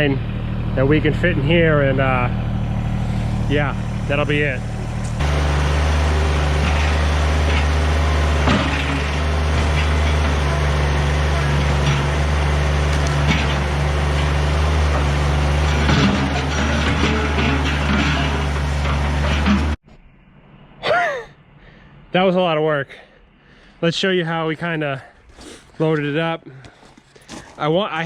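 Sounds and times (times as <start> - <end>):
tractor diesel engine running: 0.0 - 19.8.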